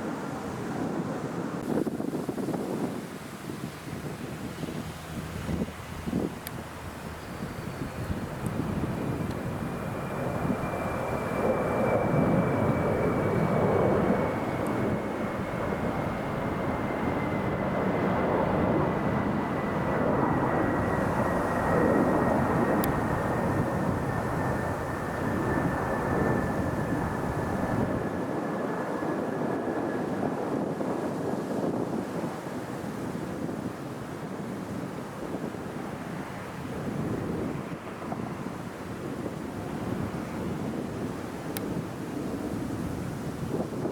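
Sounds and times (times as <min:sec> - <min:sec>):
airliner engine rumble: 0:00.0 - 0:43.9
high engine whine: 0:01.6 - 0:28.5.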